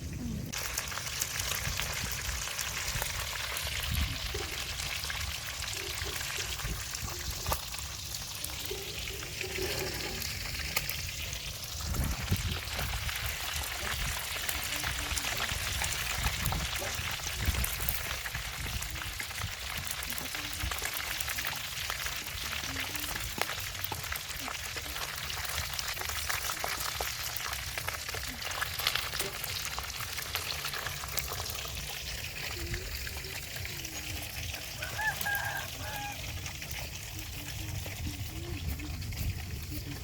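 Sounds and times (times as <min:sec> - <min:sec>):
chicken frying in hot oil: 0:00.0 - 0:40.0.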